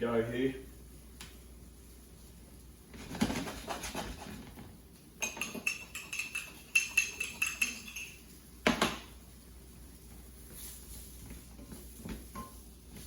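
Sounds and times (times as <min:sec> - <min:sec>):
utensils scraping and rattling: 0:05.2 - 0:08.3
dishes clinking: 0:05.2 - 0:09.1, 0:12.3 - 0:12.6.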